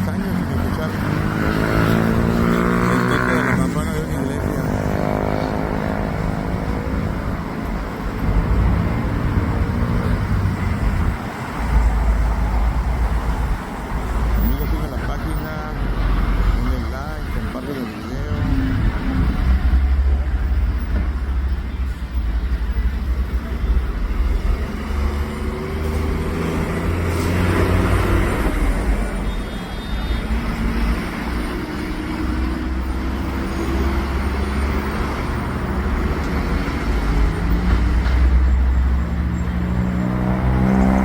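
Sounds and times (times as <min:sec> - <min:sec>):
wind rumble: 0:06.6 - 0:14.5.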